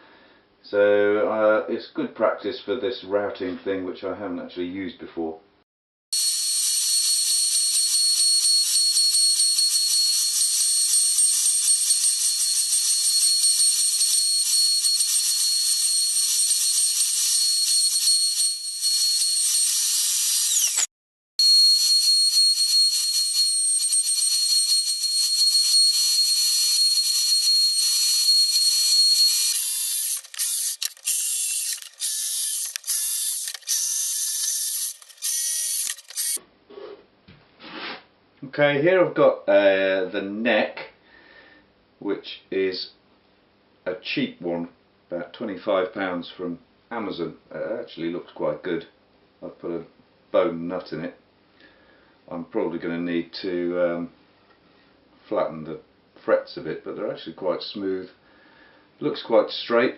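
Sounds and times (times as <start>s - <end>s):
router cutting wood: 13.7s - 20.9s, 26.9s - 36.4s.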